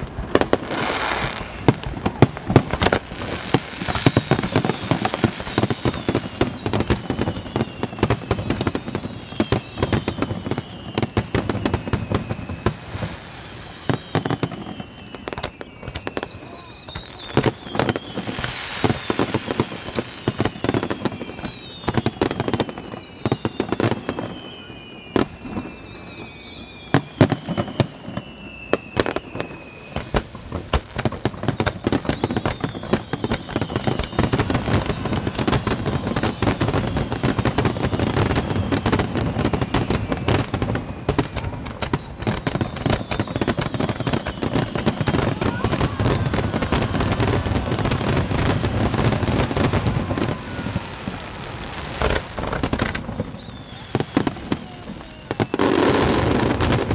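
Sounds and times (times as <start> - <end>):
crackling fireworks barrage: 0.0 - 56.9
falling firework whistles: 0.0 - 56.9
fireworks shells bursting: 51.9 - 54.4.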